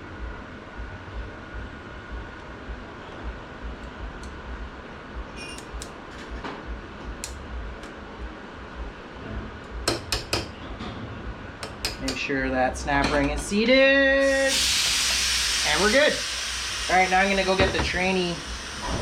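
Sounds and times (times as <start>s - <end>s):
low background rumble: 0.0s - 14.2s.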